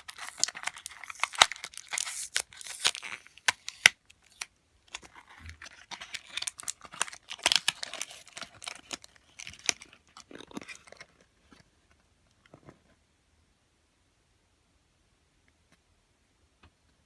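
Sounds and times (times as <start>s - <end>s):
wrapper crinkling and tearing: 0.0s - 11.3s.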